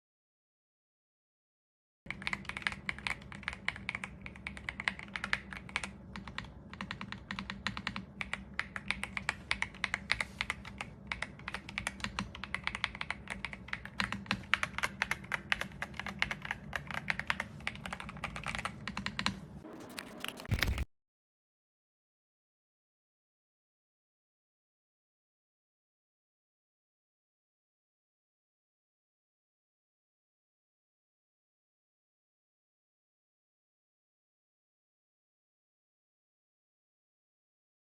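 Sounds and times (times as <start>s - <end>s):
fast typing on mechanical keyboard: 2.1s - 20.8s.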